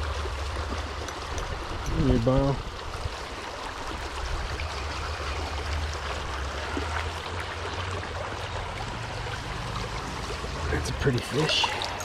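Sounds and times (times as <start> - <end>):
stream water rushing: 0.0 - 12.0.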